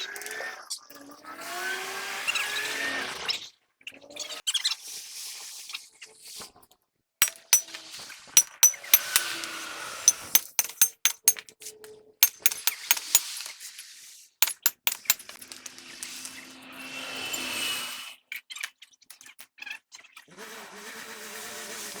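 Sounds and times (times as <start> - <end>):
metal tools clinking: 7.2 - 7.8, 8.4 - 9.3, 10.1 - 11.4, 12.2 - 13.3, 14.4 - 15.3.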